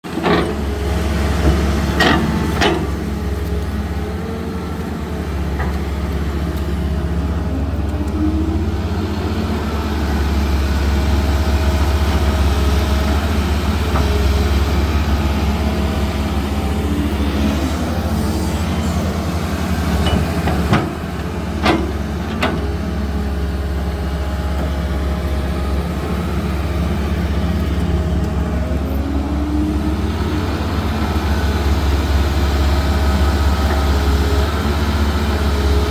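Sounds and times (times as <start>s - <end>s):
excavator diesel engine running: 0.0s - 35.9s.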